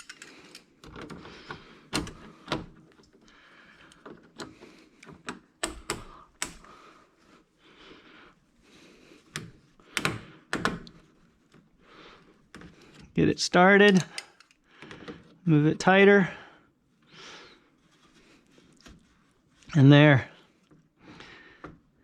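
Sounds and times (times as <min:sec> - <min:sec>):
metal clicks of pliers and clamp: 0:00.0 - 0:01.2, 0:13.8 - 0:14.6.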